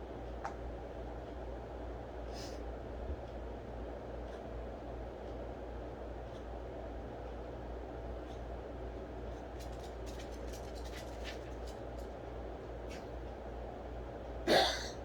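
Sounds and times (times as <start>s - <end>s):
low room hum and hiss: 0.0s - 15.0s
dog coughing loudly: 14.4s - 15.0s.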